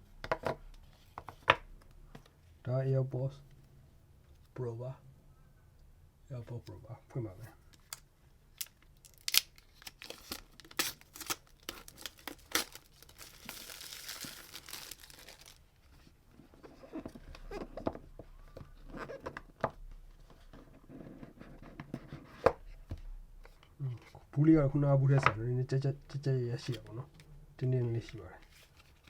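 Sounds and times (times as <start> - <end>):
packaging clicks and handling knocks: 7.7 - 15.6
packaging tearing: 8.6 - 15.6
box rustling: 9.0 - 15.6.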